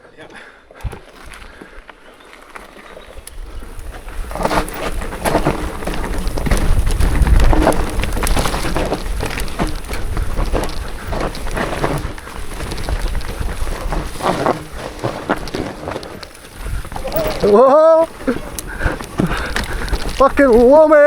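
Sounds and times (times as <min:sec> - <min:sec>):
tyres crunching on trail: 0:00.0 - 0:21.0
bike rattling and knocking: 0:02.3 - 0:21.0
wind buffeting microphone: 0:03.1 - 0:21.0.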